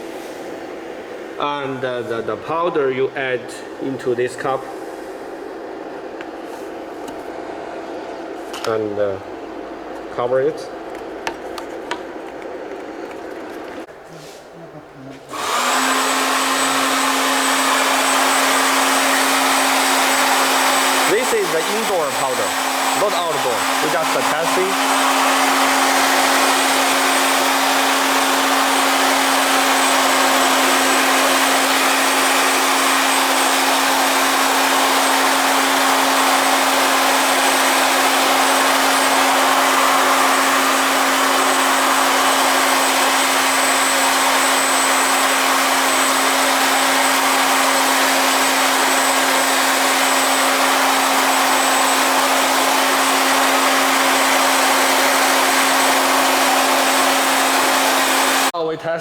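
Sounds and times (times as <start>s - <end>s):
motor hum: 14.8s - 58.5s.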